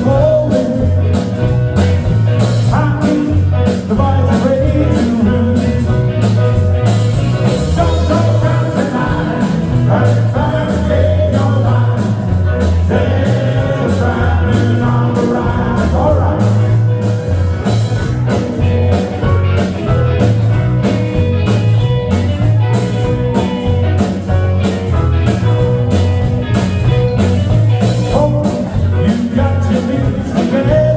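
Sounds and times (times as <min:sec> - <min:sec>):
person singing: 0:00.0 - 0:01.3, 0:02.6 - 0:06.3, 0:07.4 - 0:17.2, 0:28.0 - 0:30.9
repeating bass line: 0:00.0 - 0:30.9
rock band playing: 0:00.0 - 0:30.9
steady drum beat: 0:00.0 - 0:30.9.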